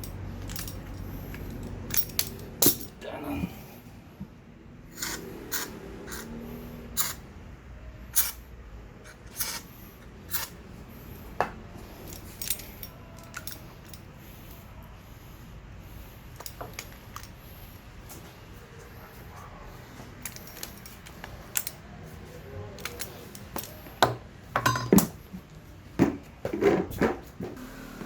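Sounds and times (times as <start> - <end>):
metallic clicks of brake parts: 22.8 - 25.2.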